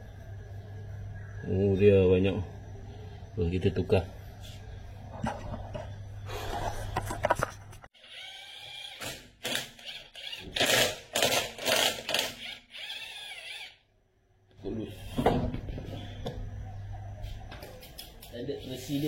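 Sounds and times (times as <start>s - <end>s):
low steady hum: 0.0s - 7.9s, 13.9s - 19.0s.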